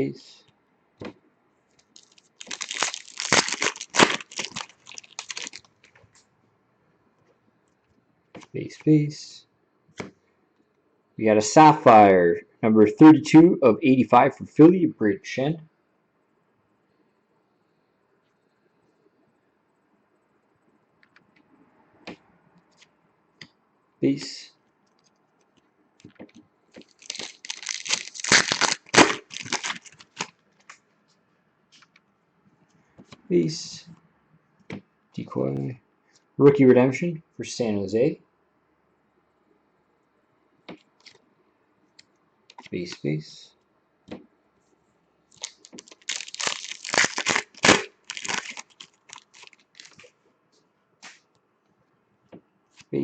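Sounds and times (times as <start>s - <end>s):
wrapper tearing and rustling: 1.9s - 5.9s, 26.8s - 30.8s, 45.3s - 50.1s.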